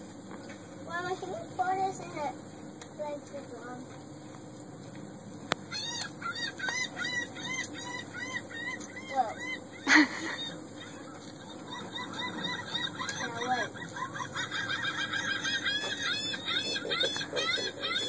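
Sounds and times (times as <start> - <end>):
honking bird calls: 5.6 - 18.0.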